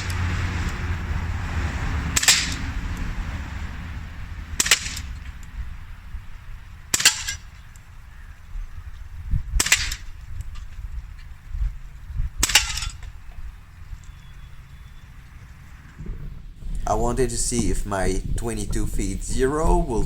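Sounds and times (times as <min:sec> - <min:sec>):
low rumble: 0:00.0 - 0:20.0
air pistol shots: 0:02.2 - 0:02.6, 0:04.6 - 0:05.2, 0:06.9 - 0:07.5, 0:09.6 - 0:10.1, 0:12.4 - 0:13.0.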